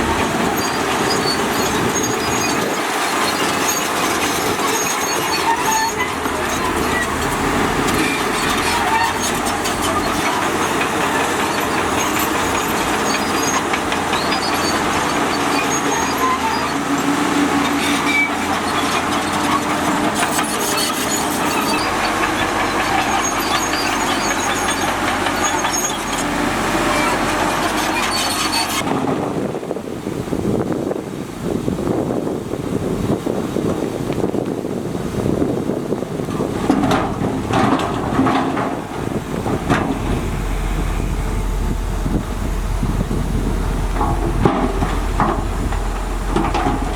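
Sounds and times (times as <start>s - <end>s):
bulldozer diesel engine running: 0.0s - 30.5s, 35.3s - 46.9s
mechanical clatter: 36.8s - 46.9s.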